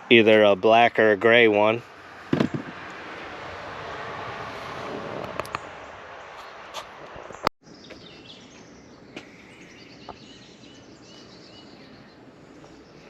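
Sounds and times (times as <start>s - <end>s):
small birds chirping: 5.5s - 13.0s.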